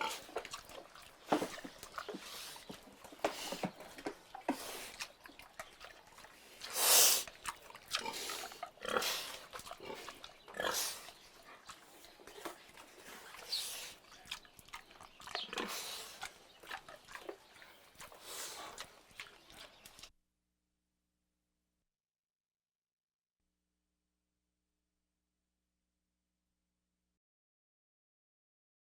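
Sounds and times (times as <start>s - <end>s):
pig grunting: 0.0s - 20.1s.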